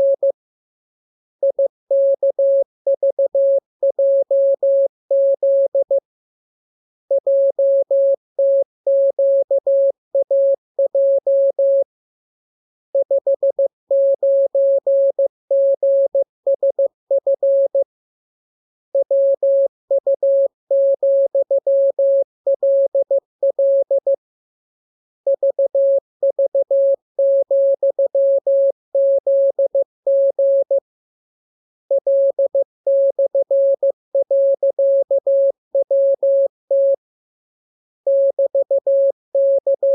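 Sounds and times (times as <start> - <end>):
morse code beeps: 31.9 - 37.0, 38.1 - 39.9.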